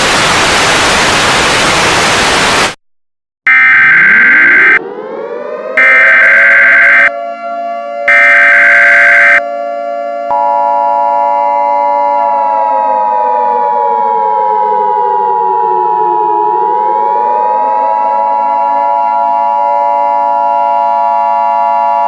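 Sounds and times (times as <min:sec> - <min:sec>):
siren wail: 0:03.5 - 0:22.0
harsh digital data burst: 0:05.8 - 0:07.1, 0:08.1 - 0:09.4
steady high attention tone: 0:05.8 - 0:07.1, 0:08.1 - 0:09.4.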